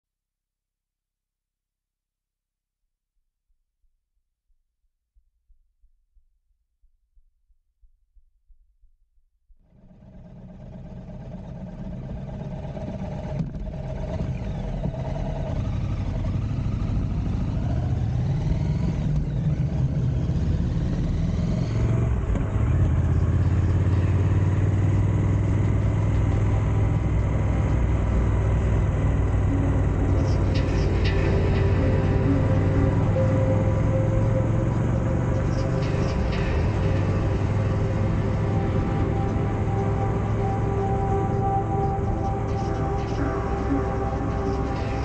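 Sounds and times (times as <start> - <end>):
motorcycle engine running: 9.6 - 45.0.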